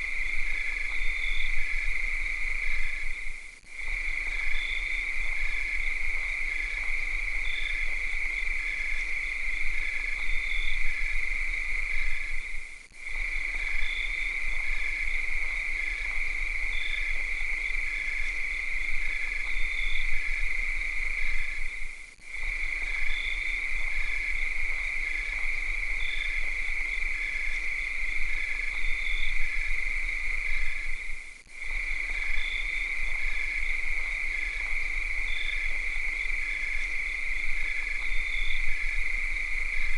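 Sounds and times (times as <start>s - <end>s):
cicadas droning: 0.0s - 39.9s.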